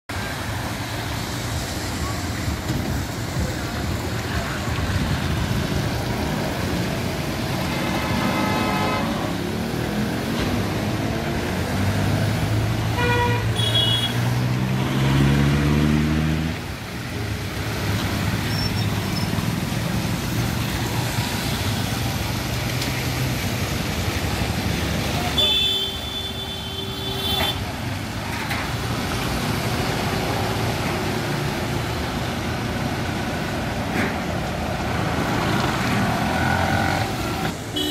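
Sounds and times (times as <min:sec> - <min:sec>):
street traffic engines: 0:00.1 - 0:37.9
car horn: 0:12.9 - 0:14.3, 0:25.4 - 0:27.7
vehicle engine revving: 0:14.2 - 0:16.6, 0:34.9 - 0:37.5.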